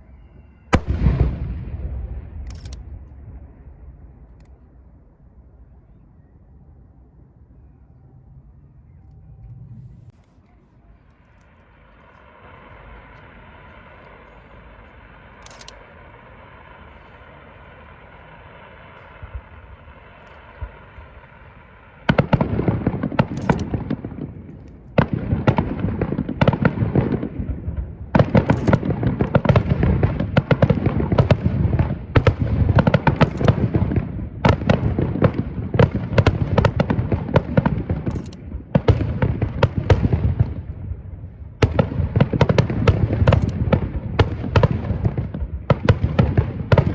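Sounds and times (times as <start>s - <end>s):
firework bursts and crackling: 0.6s - 4.8s, 10.8s - 46.9s
faint sustained tones: 5.1s - 20.4s.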